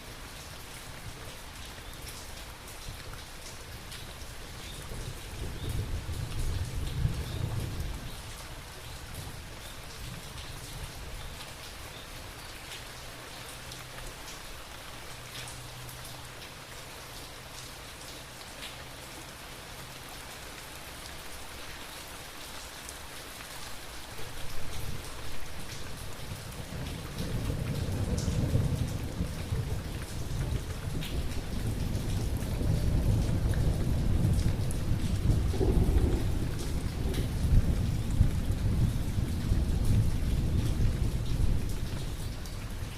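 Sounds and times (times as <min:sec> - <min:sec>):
steady rain: 0:00.0 - 0:42.9
thunder rumbling: 0:30.4 - 0:41.9.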